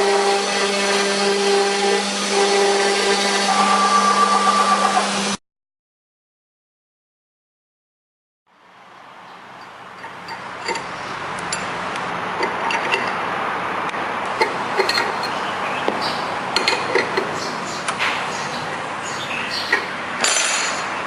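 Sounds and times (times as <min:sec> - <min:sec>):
cnc router carving wood: 0:00.0 - 0:05.4.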